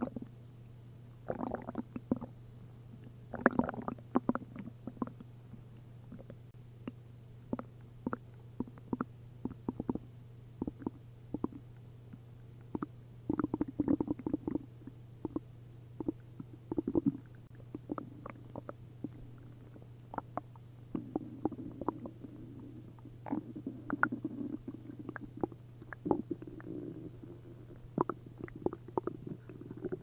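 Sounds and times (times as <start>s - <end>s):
stomach gurgling: 1.3s - 2.3s, 3.0s - 5.3s, 6.1s - 6.4s, 7.5s - 10.0s, 10.6s - 11.6s, 12.6s - 30.0s.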